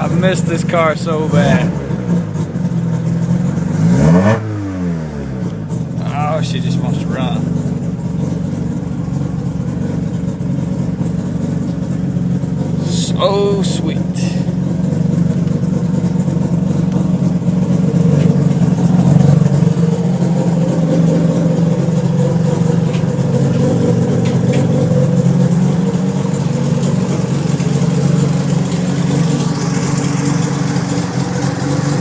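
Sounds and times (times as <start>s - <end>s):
rotary engine idling: 0.0s - 4.3s, 5.2s - 32.0s.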